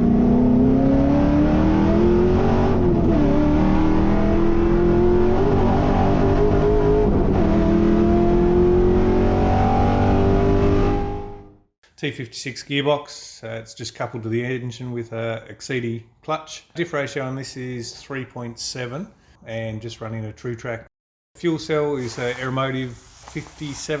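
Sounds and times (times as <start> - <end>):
race car engine accelerating hard: 0.0 - 11.5.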